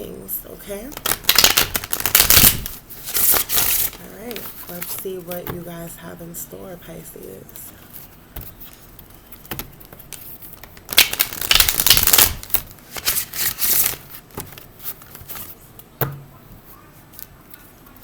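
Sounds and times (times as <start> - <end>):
cards being shuffled: 0.9 - 5.5, 7.8 - 15.6.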